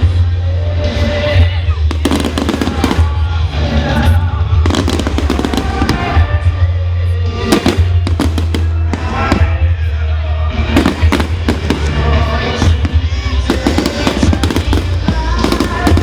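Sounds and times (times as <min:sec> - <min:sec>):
fireworks crackling and banging: 0:00.0 - 0:16.0
music with heavy bass: 0:00.0 - 0:16.0.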